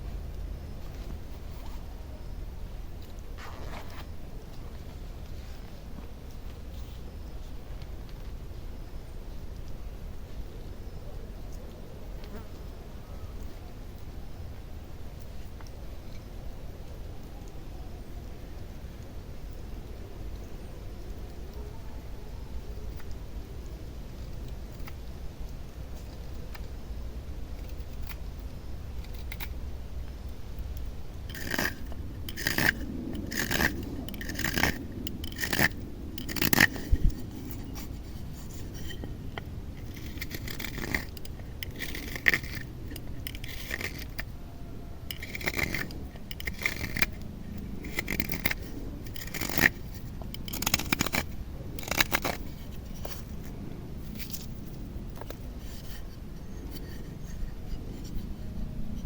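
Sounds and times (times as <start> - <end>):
blade scraping wood: 30.8 - 44.4, 45.0 - 58.3.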